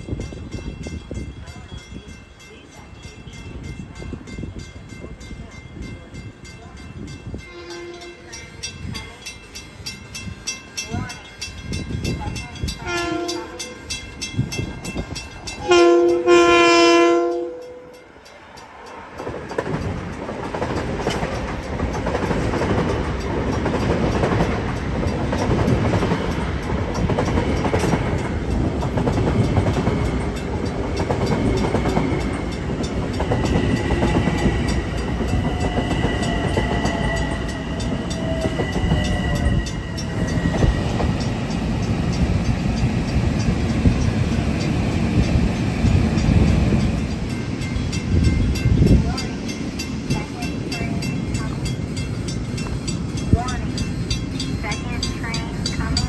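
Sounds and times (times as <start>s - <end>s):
train horn blasts: 7.4s - 8.3s, 12.8s - 14.0s, 15.6s - 18.0s, 35.5s - 40.7s
train wheels clattering on rail: 18.6s - 56.0s.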